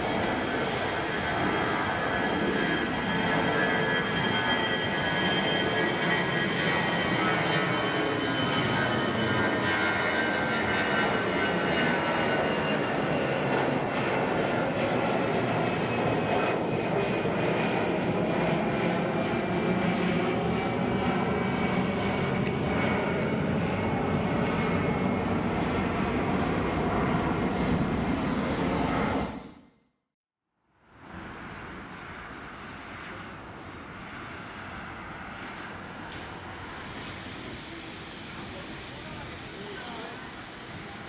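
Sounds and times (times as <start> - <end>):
jet engines whining: 0.0 - 29.6.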